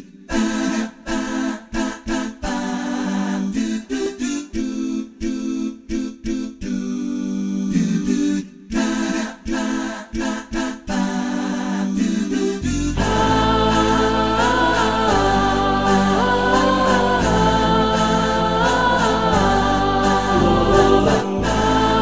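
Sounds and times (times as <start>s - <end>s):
person singing wordless aahs: 12.6s - 22.0s.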